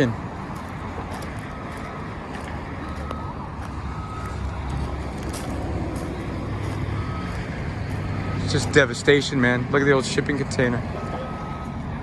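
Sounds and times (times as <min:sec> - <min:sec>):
car road and engine noise: 0:00.0 - 0:12.0.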